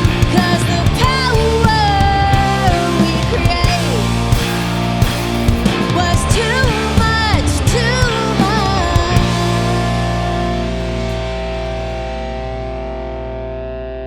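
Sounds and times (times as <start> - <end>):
person singing: 0.0 - 4.2, 5.8 - 11.4
drums at a steady beat: 0.0 - 12.6
bass: 0.0 - 14.0
distorted electric guitars: 0.0 - 14.0.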